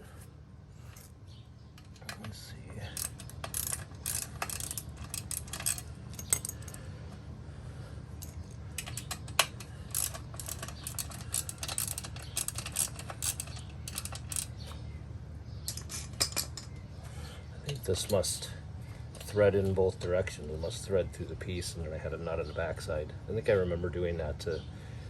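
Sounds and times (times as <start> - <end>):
wrench and metal parts clinking: 1.8 - 6.9, 8.2 - 14.7, 15.6 - 16.8.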